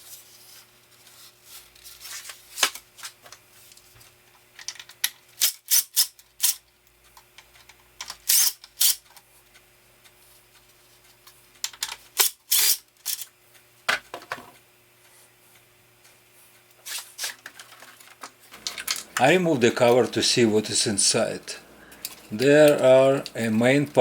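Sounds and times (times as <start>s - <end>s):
tools clicking on small parts: 4.6s - 9.2s, 11.6s - 13.3s.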